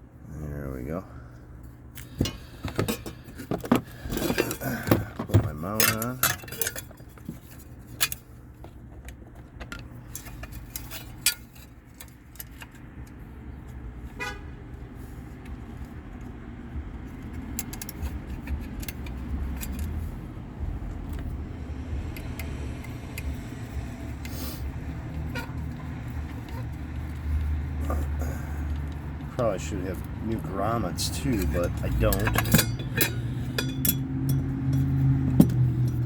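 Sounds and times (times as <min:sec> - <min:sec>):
metallic clicks and taps of screws: 0:05.6 - 0:13.8, 0:15.4 - 0:20.1, 0:20.8 - 0:27.6, 0:28.6 - 0:29.3, 0:30.0 - 0:36.0.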